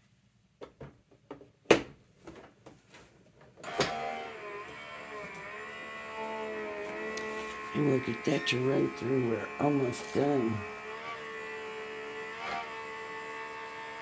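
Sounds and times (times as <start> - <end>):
machine motor whining: 3.6 - 14.0.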